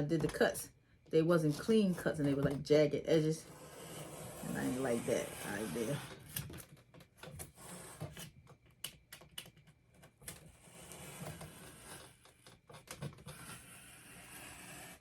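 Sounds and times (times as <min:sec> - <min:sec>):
blade cutting foam board: 0:01.5 - 0:06.6, 0:07.4 - 0:08.4, 0:10.3 - 0:12.2, 0:12.9 - 0:15.0.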